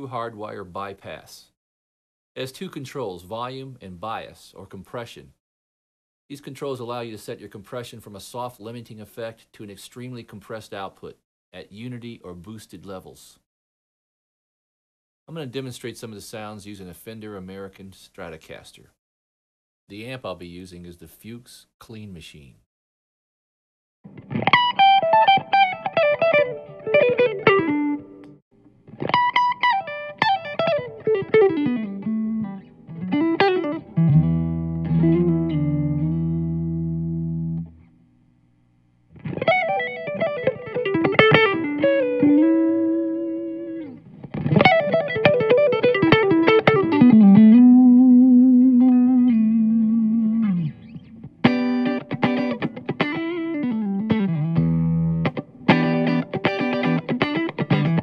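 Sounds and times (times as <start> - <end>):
electric guitar playing: 24.1 - 37.9, 39.1 - 58.0.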